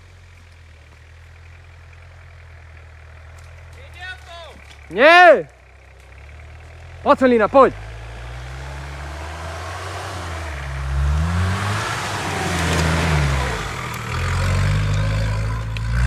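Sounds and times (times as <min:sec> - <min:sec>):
engine revving under load: 0:03.2 - 0:16.0.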